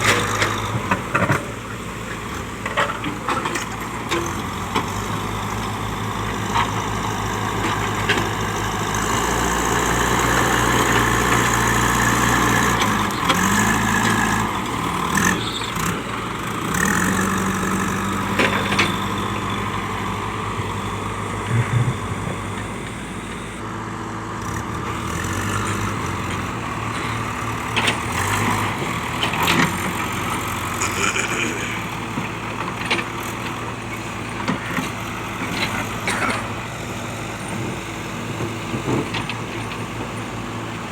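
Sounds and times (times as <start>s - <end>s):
diesel engine running and revving: 0.0s - 40.9s.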